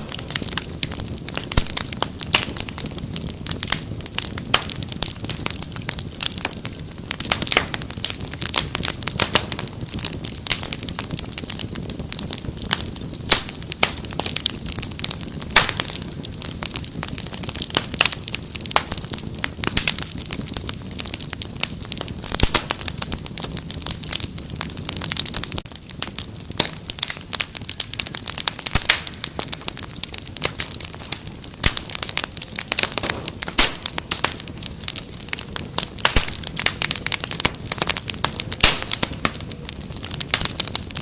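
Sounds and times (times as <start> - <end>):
low rumble of burning: 0.0 - 41.0
wood fire crackling: 0.0 - 41.0.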